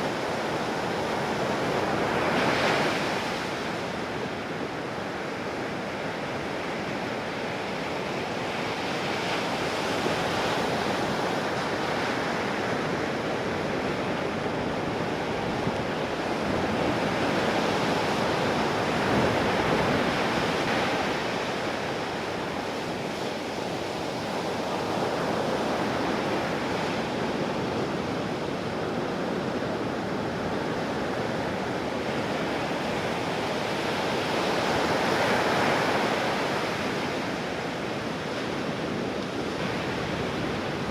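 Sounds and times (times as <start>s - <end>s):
surf waves roaring: 0.0s - 40.9s.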